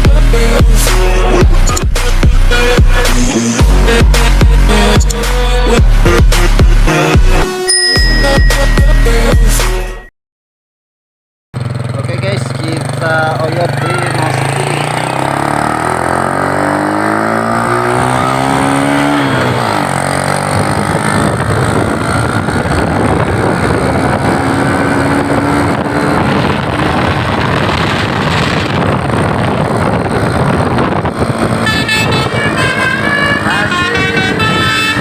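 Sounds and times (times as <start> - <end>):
road noise at speed: 0.0 - 7.4, 11.6 - 35.0
vehicle engine revving: 11.6 - 35.0
bus horn multi-tone melody: 31.5 - 35.0.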